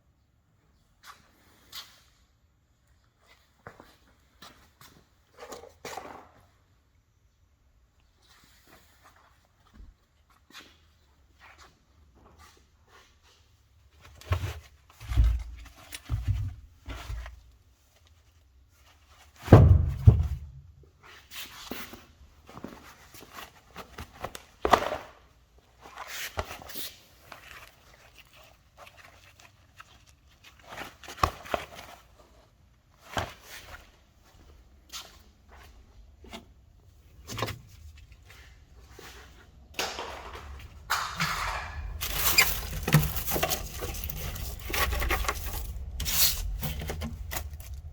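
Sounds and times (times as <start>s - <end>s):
rubbing and scraping: 40.7s - 47.9s.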